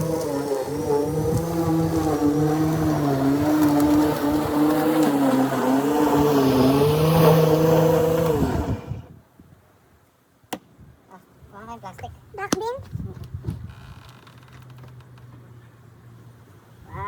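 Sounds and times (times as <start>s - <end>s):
lawn mower engine running: 0.0s - 9.1s.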